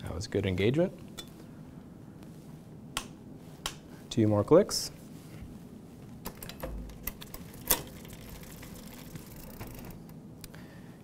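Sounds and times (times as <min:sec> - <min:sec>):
bike chain running over cassette: 0:07.1 - 0:10.1.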